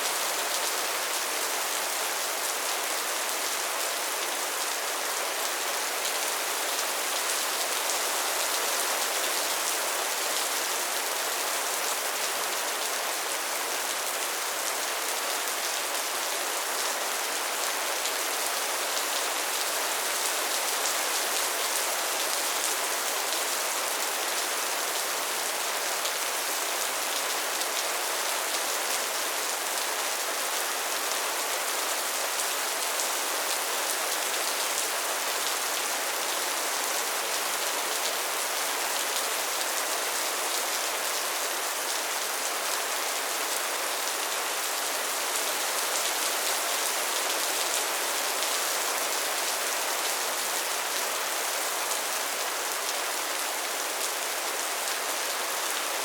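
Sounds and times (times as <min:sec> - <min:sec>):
steady rainfall: 0:00.0 - 0:56.0.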